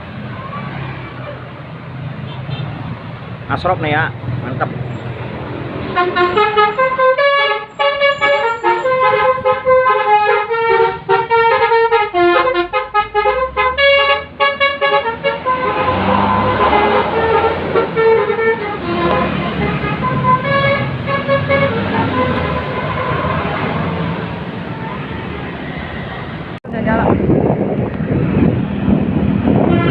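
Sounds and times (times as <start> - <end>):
bus engine: 0.0 - 29.9
road noise: 0.0 - 29.9
musical bus horn: 5.9 - 24.0, 24.6 - 25.6, 29.5 - 29.9.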